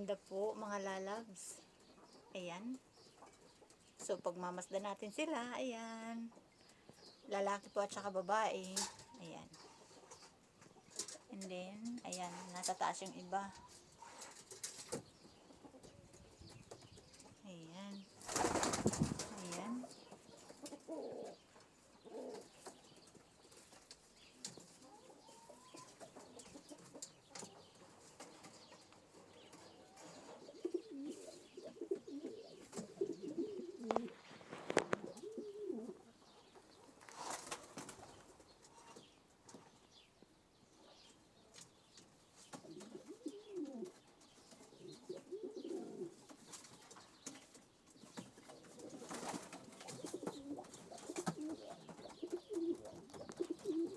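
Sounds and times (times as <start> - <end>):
pigeons cooing: 18.2 - 22.9, 28.6 - 39.1, 42.5 - 46.6, 48.0 - 53.9.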